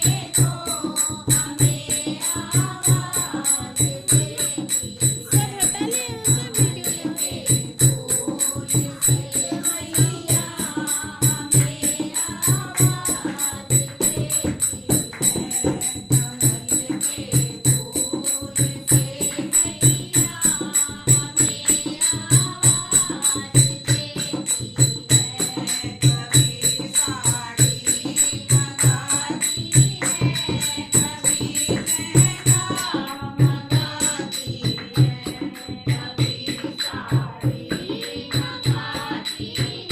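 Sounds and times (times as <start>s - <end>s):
jingling tambourine: 0.0s - 39.9s
low drum beating steadily: 1.2s - 11.8s
wavering sung melody: 2.1s - 14.3s.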